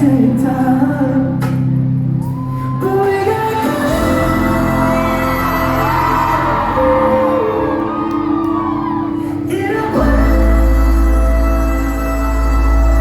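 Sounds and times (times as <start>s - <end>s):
live pop song over sound system: 0.0s - 13.0s
audience shouting: 4.3s - 9.4s.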